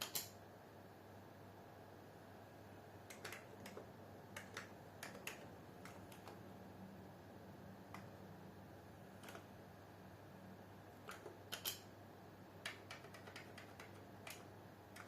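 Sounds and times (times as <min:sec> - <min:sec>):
low steady hum: 0:00.0 - 0:15.0
keyboard typing: 0:03.1 - 0:06.5, 0:09.1 - 0:09.5, 0:11.0 - 0:11.9, 0:12.6 - 0:15.0.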